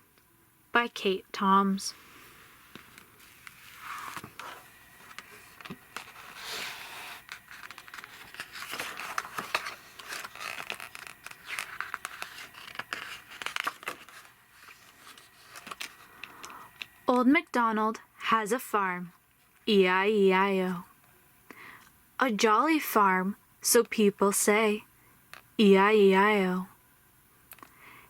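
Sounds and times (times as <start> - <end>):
book pages rustling and turning: 2.0 - 17.0.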